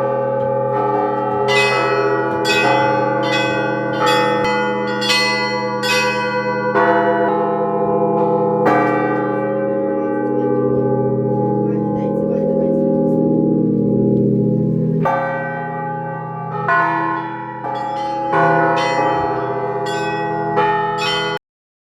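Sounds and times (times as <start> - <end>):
church bells struck by hand: 0.0 - 21.4.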